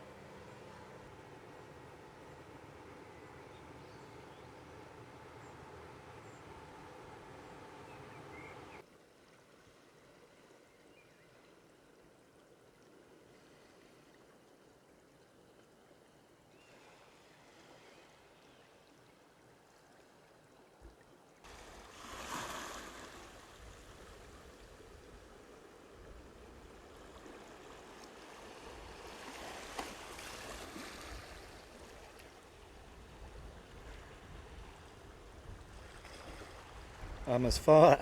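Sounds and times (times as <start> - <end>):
sea waves washing ashore: 0.0 - 8.8, 21.5 - 38.0.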